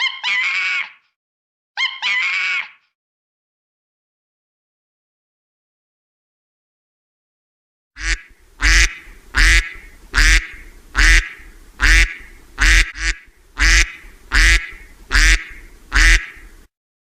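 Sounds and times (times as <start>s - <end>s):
animal calling: 0.0s - 1.0s, 1.8s - 2.8s, 8.0s - 16.6s.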